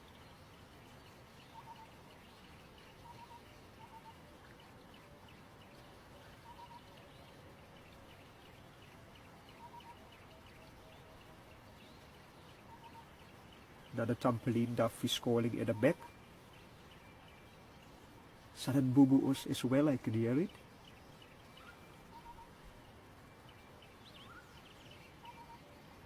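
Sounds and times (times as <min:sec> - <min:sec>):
soft high bird chirps: 0:00.0 - 0:26.0
bird cooing: 0:01.6 - 0:01.8, 0:03.0 - 0:04.2, 0:06.4 - 0:07.1, 0:09.6 - 0:10.0, 0:21.6 - 0:22.6, 0:25.2 - 0:25.8.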